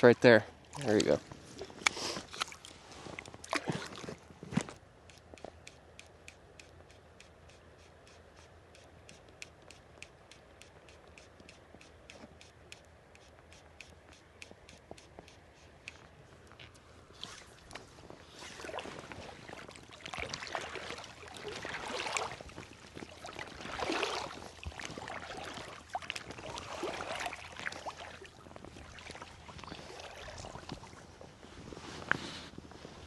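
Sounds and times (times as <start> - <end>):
river water sloshing: 0.0 - 5.2, 12.4 - 31.8.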